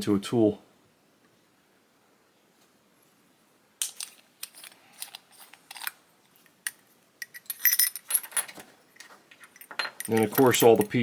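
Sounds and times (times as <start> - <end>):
small metal pieces clinking: 3.9 - 6.0, 6.6 - 11.0
light metal scrapes: 4.4 - 6.0.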